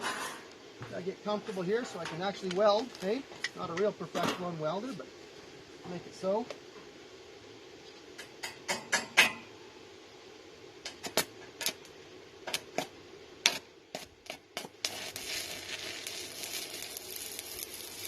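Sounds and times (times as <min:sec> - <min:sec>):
welding rod pops and ticks: 0:10.8 - 0:11.9, 0:12.5 - 0:18.0
welding arc crackling: 0:12.5 - 0:18.0.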